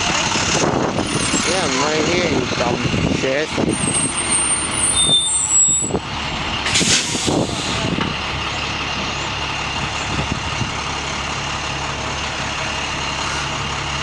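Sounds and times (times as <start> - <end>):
bus diesel engine idling: 0.0 - 14.0
air hiss burst: 6.7 - 7.9.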